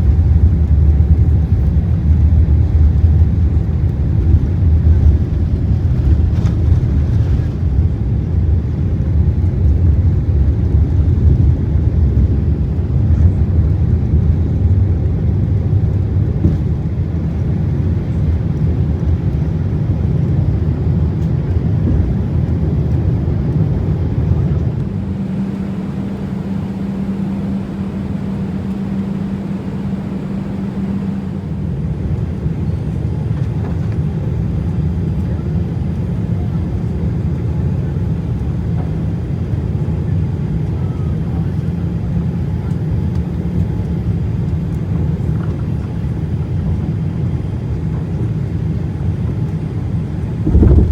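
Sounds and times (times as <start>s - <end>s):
steady hum: 0.0s - 16.6s, 21.8s - 33.4s, 43.5s - 50.9s
low vehicle rumble: 0.0s - 50.9s.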